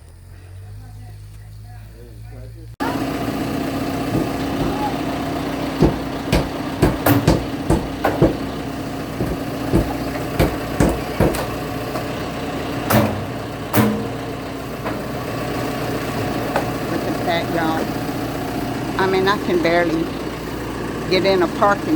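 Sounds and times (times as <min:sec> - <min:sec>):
heavy machinery engine running: 0:00.0 - 0:21.9
sharp knocks and clanks: 0:03.8 - 0:18.1.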